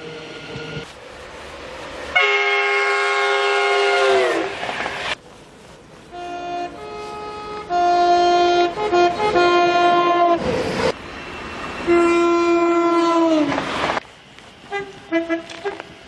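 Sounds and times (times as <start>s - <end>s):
train two-tone horn blasts: 2.1s - 5.2s, 6.1s - 10.6s, 11.8s - 13.6s, 14.6s - 16.0s.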